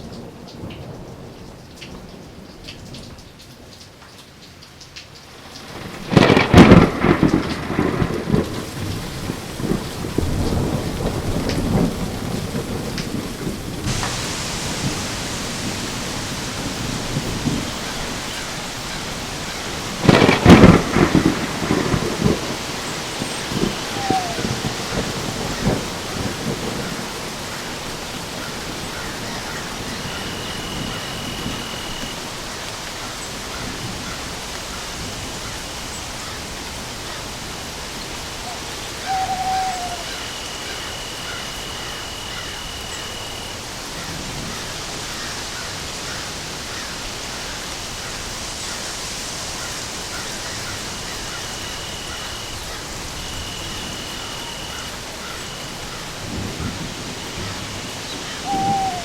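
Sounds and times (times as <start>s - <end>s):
steady rain falling: 0.0s - 59.0s
short call: 23.8s - 24.8s, 38.5s - 42.1s, 58.4s - 59.0s.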